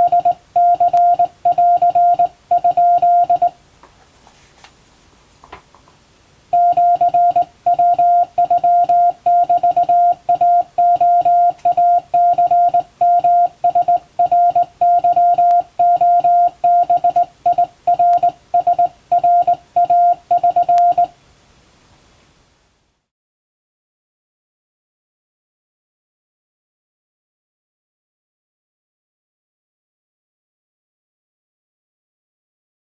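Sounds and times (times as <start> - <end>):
morse code beeps: 0.0 - 3.6, 6.6 - 21.1.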